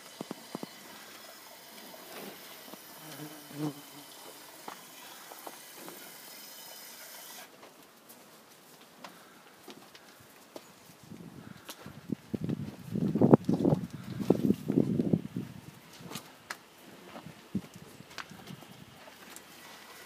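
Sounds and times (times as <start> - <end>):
steady hiss: 0.0 - 7.6
small knocks and shuffles: 7.5 - 15.1.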